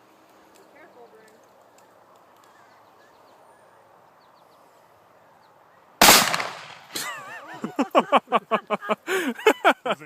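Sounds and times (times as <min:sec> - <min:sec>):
revolver gunshot: 0:06.0 - 0:07.0.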